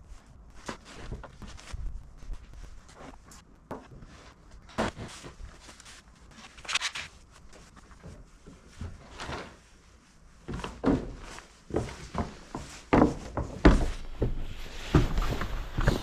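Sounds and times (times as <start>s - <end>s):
footsteps: 10.5s - 16.0s.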